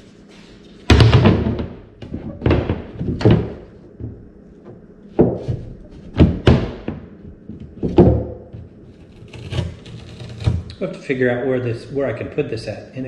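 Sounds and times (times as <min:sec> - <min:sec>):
thunks and knocks in wooden hull: 0:00.9 - 0:04.2, 0:05.2 - 0:08.7.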